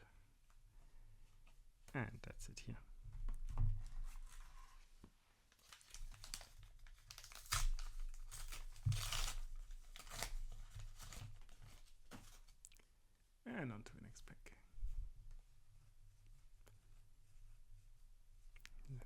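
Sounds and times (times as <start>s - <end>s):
wrapper tearing and crinkling: 5.6s - 12.6s.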